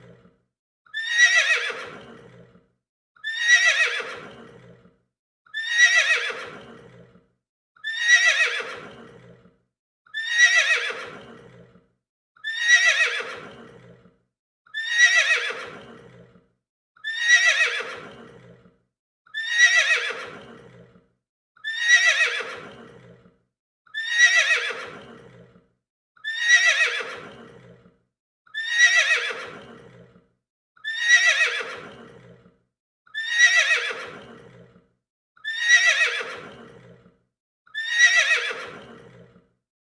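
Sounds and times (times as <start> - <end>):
horse whinnying: 0.9 - 2.5, 3.2 - 4.8, 5.5 - 7.1, 7.8 - 9.4, 10.1 - 11.7, 12.4 - 14.0, 14.8 - 16.3, 17.0 - 18.6, 19.4 - 20.9, 21.6 - 23.2, 24.0 - 25.5, 26.2 - 27.8, 28.6 - 30.0, 30.8 - 32.4, 33.2 - 34.7, 35.4 - 37.0, 37.8 - 39.3.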